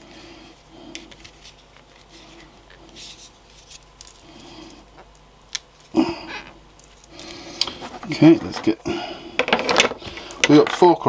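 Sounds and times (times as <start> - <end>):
rustles of metal pieces: 7.7 - 8.8, 9.4 - 11.0.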